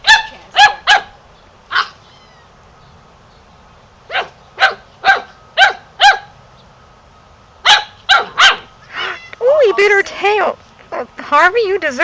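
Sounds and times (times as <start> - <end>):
puppy yapping: 0.0 - 2.4, 4.1 - 6.3, 7.6 - 9.4.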